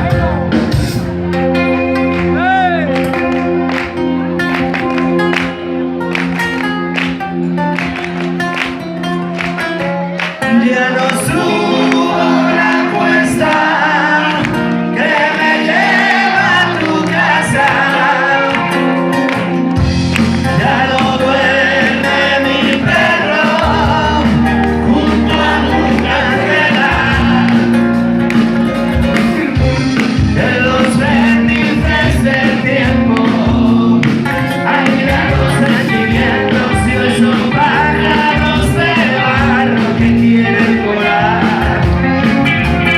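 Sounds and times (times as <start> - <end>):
pop-rock band playing: 0.0 - 42.9
person singing: 10.3 - 19.3, 20.4 - 27.8, 29.6 - 42.9.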